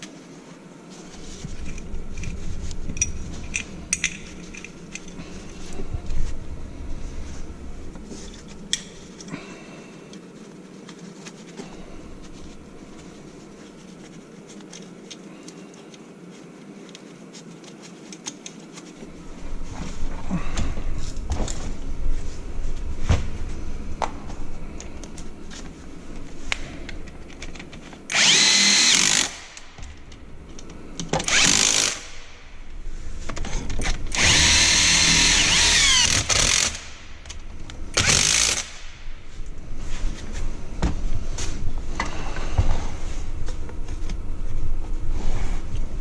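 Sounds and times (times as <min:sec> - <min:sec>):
power drill whining: 0:28.1 - 0:29.6, 0:31.3 - 0:32.2, 0:34.1 - 0:37.0, 0:38.0 - 0:38.8.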